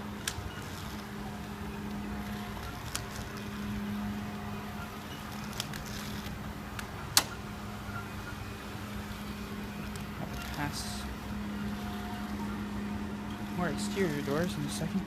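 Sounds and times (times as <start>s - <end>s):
floor-cleaning machine motor humming: 0.0s - 15.0s.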